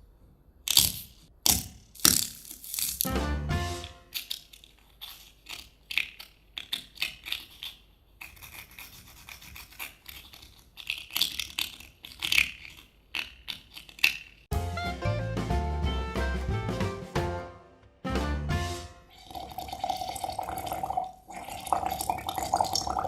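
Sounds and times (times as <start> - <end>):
music with drum beat: 3.1 - 4.0, 14.5 - 19.0
scratching and scraping strokes: 3.8 - 14.3.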